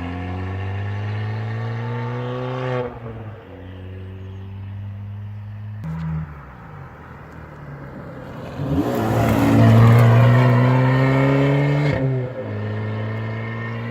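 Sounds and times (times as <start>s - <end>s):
car engine revving: 0.0s - 13.9s.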